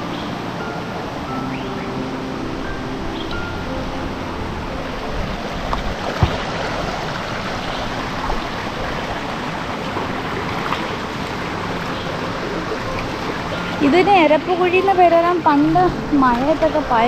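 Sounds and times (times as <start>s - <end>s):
stream water rushing: 0.0s - 17.0s
thump: 6.2s - 6.5s.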